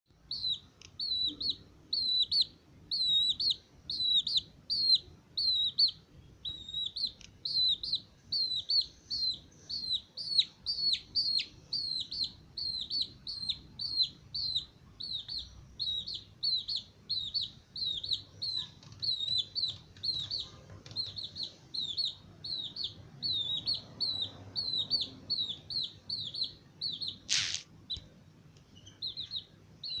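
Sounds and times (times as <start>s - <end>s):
chicks peeping: 0.3s - 28.1s, 28.7s - 30.0s
sharp loud sound: 27.3s - 27.7s.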